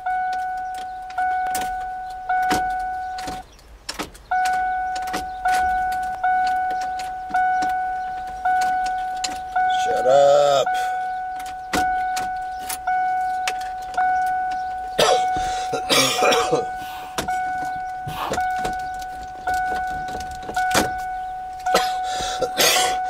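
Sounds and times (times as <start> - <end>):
car key-reminder chime dinging: 0.0 - 3.5, 4.2 - 23.0
clicks: 0.1 - 15.8.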